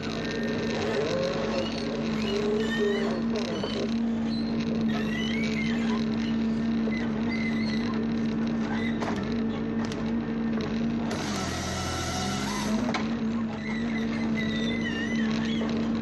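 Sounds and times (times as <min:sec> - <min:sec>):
heavy machine engine humming: 0:05.5 - 0:16.0
hissy machine sound: 0:11.1 - 0:12.9.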